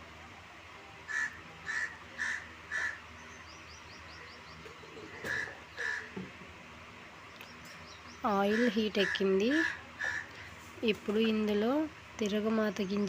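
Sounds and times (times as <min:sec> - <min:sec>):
bird calling: 0:01.1 - 0:06.3, 0:07.4 - 0:10.5.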